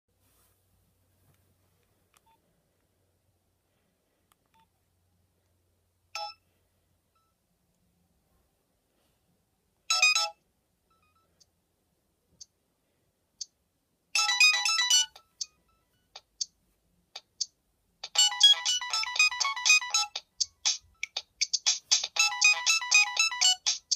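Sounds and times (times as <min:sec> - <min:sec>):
short phone beeps: 0:06.2 - 0:06.4
high-pitched ringtone melody: 0:09.9 - 0:10.4, 0:14.2 - 0:16.3, 0:18.0 - 0:23.9.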